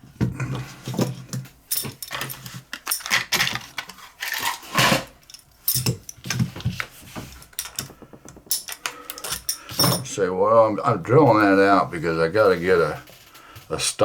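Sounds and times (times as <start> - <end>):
small metal objects clinking: 1.7 - 6.4, 7.5 - 10.1.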